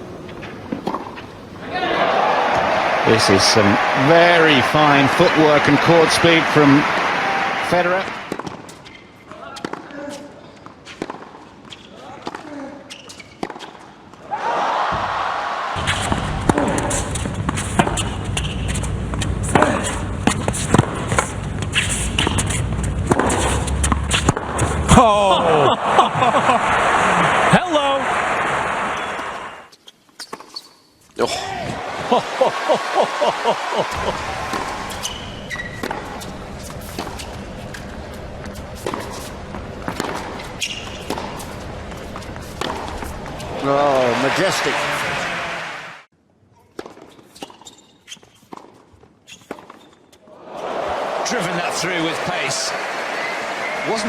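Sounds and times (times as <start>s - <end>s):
steady background noise: 0.0s - 10.8s, 31.4s - 46.0s
tennis rackets striking ball: 15.8s - 25.0s, 33.9s - 44.6s.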